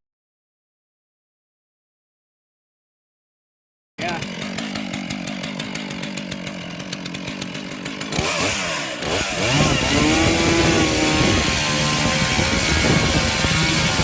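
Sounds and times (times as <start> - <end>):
chainsaw engine revving: 4.0 - 14.0.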